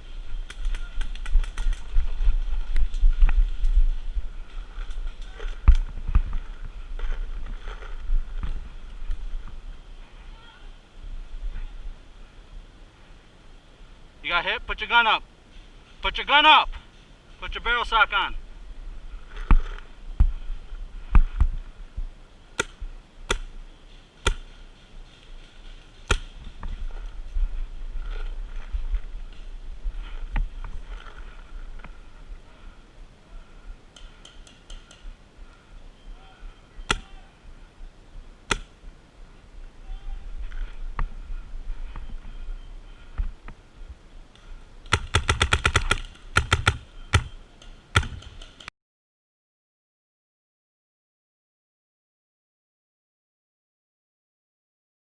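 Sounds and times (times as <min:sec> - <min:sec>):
paintball marker shots: 0:44.9 - 0:48.7.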